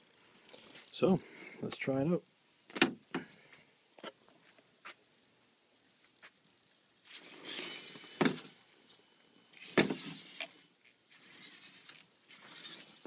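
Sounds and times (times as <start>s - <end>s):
toy car motor whirring: 0.0s - 1.0s, 4.9s - 13.0s.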